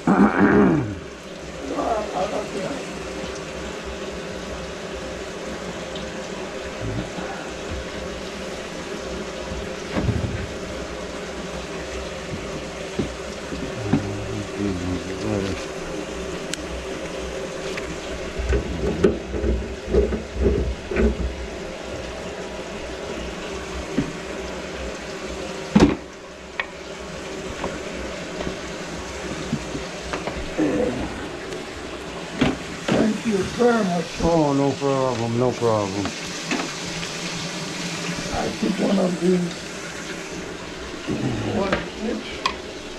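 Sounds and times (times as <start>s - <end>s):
water running into sink drain: 0.0s - 42.9s
knocks and clunks: 9.5s - 10.6s.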